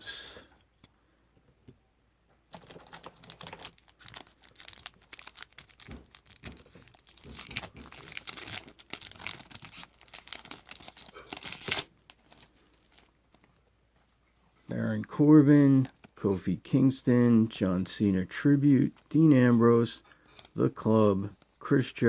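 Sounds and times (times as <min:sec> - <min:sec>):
wrapper tearing and crinkling: 0:02.5 - 0:13.6.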